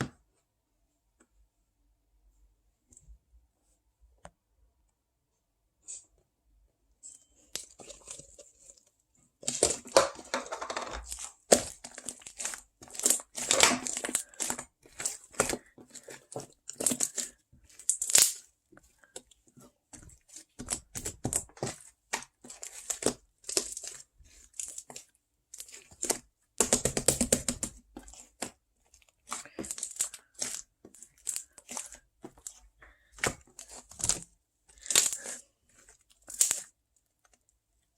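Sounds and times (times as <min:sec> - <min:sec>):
crinkling and tearing: 0:07.6 - 0:19.3, 0:20.0 - 0:37.5.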